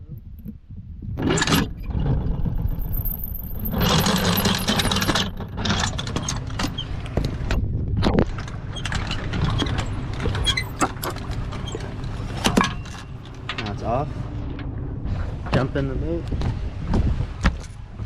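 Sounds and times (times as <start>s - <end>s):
clicks and rattles: 2.4s - 6.8s, 8.2s - 13.8s.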